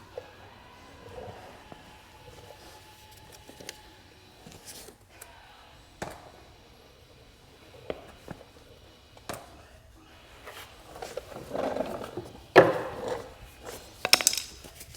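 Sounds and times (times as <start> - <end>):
faint rustling: 0.0 - 14.9
small parts clicking and knocking: 12.6 - 14.9.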